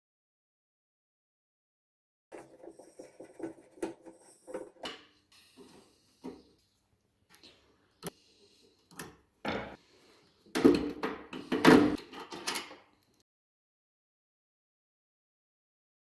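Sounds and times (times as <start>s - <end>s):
hard parts clicking and rattling: 10.5s - 12.8s.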